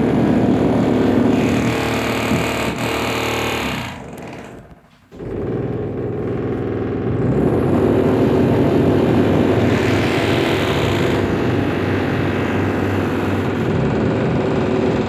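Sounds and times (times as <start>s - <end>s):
power tool buzzing drone: 5.2s - 15.0s.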